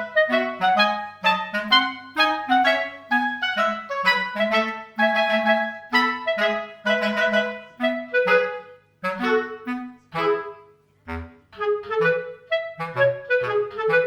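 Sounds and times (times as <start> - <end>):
low musical accompaniment: 0.0 - 14.0.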